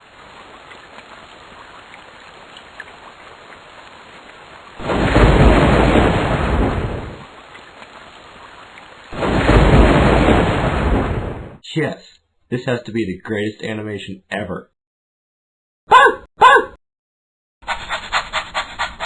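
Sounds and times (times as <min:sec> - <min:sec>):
steady rain falling: 0:00.0 - 0:11.6
thunder rolling: 0:04.8 - 0:07.4, 0:09.1 - 0:11.6.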